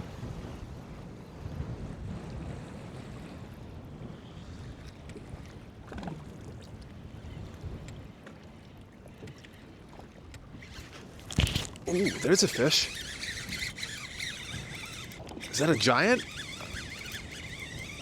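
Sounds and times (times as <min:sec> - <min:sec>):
water lapping against kayak hull: 0:02.1 - 0:18.0.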